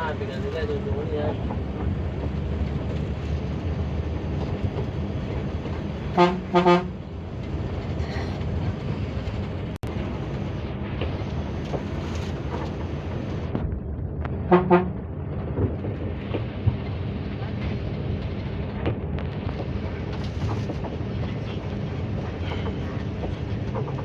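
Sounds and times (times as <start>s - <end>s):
bus engine drone: 0.0s - 24.0s
road noise: 0.0s - 24.0s
bus horn toots: 6.1s - 7.1s, 14.4s - 15.0s.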